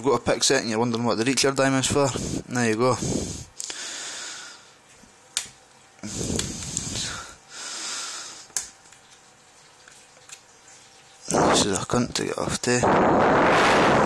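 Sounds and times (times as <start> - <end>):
man breathing heavily through nose: 2.1 - 4.8, 6.0 - 8.6.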